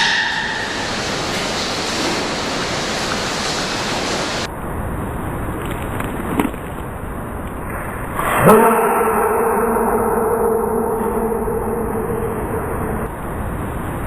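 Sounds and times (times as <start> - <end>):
steady background hiss: 0.0 - 5.6.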